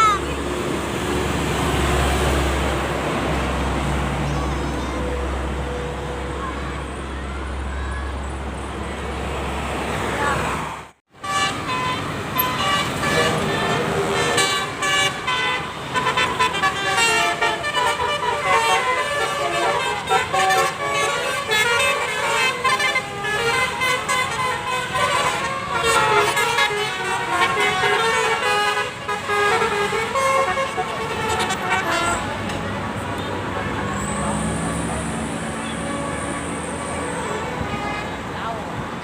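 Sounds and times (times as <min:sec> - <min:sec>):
road traffic: 0:00.0 - 0:39.0
bus horn playing a tune: 0:11.2 - 0:32.5, 0:34.3 - 0:38.4.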